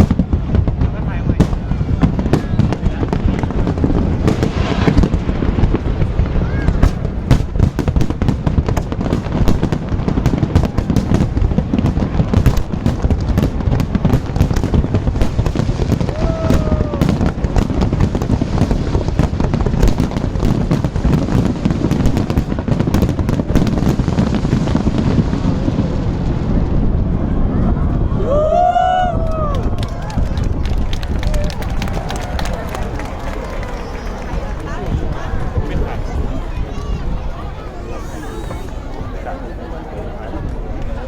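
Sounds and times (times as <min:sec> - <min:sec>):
fireworks crackling: 0:00.0 - 0:41.0
low rumble of fireworks shells: 0:00.0 - 0:41.0.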